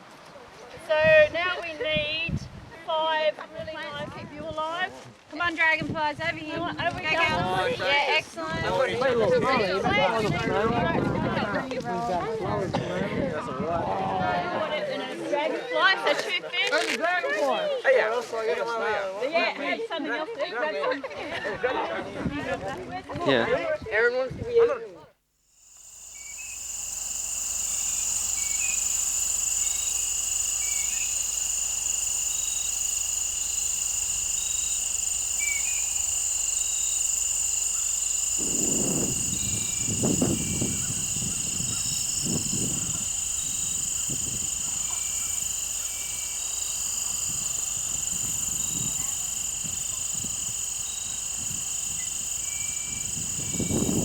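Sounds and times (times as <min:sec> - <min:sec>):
short insect chirps: 0:25.5 - 0:54.0
insects chorus: 0:25.6 - 0:54.0.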